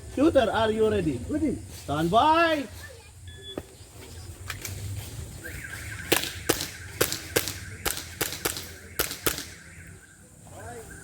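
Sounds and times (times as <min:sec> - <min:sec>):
airsoft pistol shots: 0:06.0 - 0:09.6.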